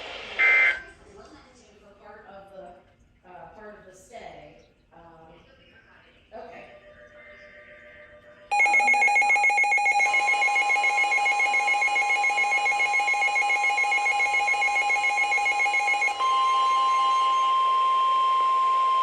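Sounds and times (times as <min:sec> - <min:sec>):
warbling electronic alarm: 0:00.4 - 0:00.8, 0:08.5 - 0:19.0.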